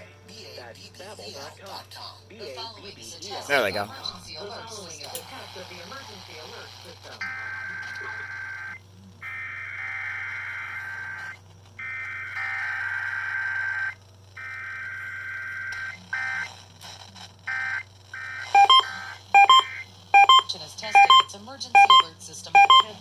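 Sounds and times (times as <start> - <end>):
short loud beeps: 18.6 - 23.0.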